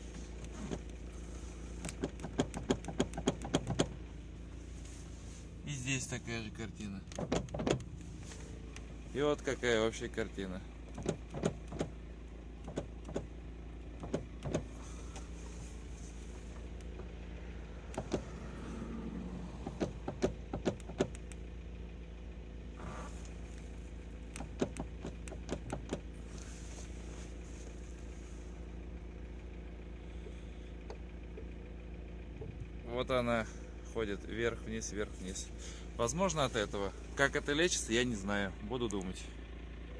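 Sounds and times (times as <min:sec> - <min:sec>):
car interior drone: 0:00.0 - 0:39.9
knocks and clatters: 0:01.8 - 0:04.0, 0:07.0 - 0:08.0, 0:10.9 - 0:12.0, 0:14.0 - 0:14.7, 0:19.6 - 0:21.2, 0:24.3 - 0:26.1.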